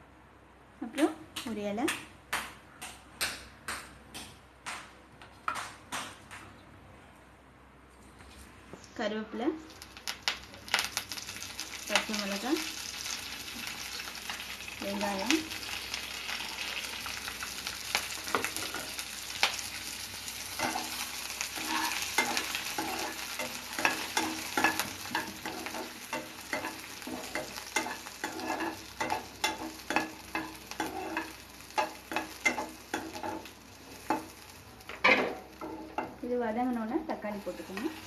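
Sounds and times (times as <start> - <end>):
onion sizzling in hot oil: 9.6 - 38.0
spoon scraping and tapping pan: 21.6 - 34.3.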